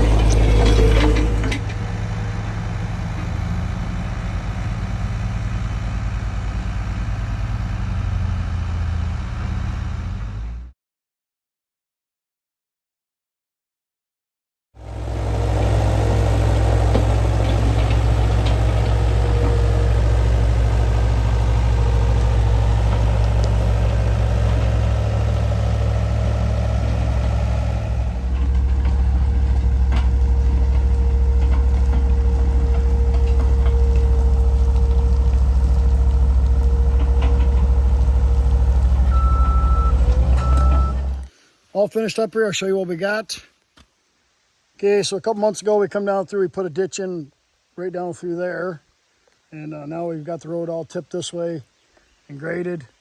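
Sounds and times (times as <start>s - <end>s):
diesel engine running: 0.0s - 10.7s, 14.8s - 41.4s.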